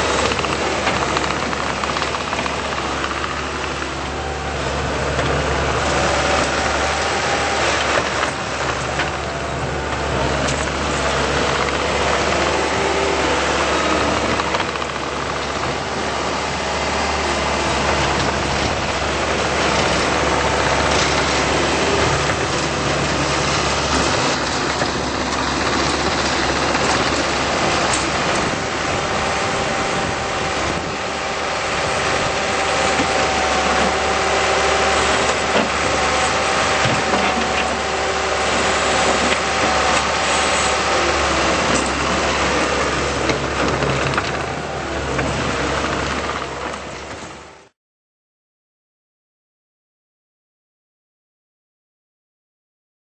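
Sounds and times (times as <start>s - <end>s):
diesel engine running: 0.0s - 47.7s.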